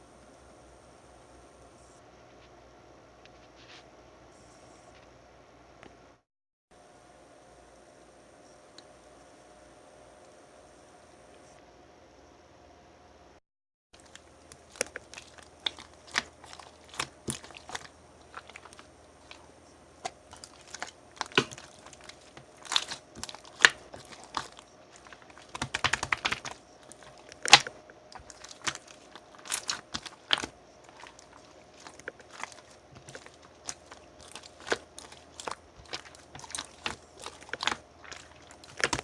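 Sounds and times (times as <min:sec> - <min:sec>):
crunchy slime squeezed by hand: 0:14.0 - 0:39.0.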